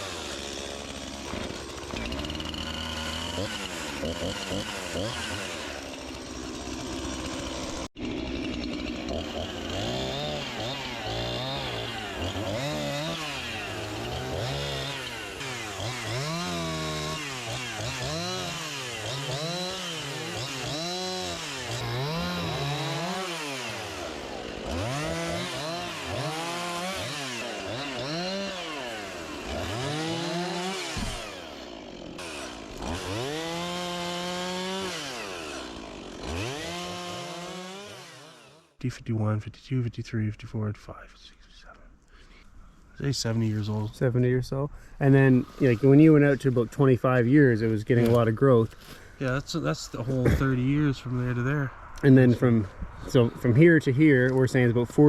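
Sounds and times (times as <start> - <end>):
chainsaw revving while cutting wood: 0.0 - 38.8.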